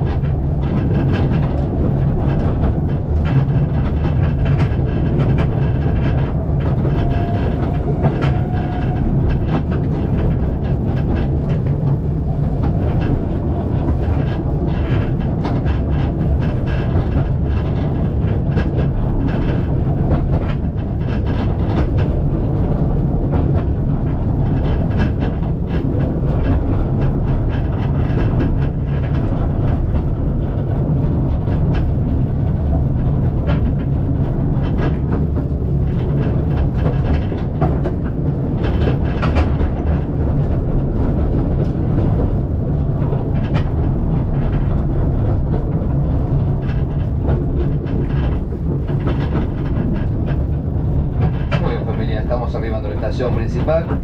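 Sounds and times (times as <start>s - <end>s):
train carriage rumbling: 0.0s - 54.0s
wheels clicking over rail joints: 0.0s - 54.0s.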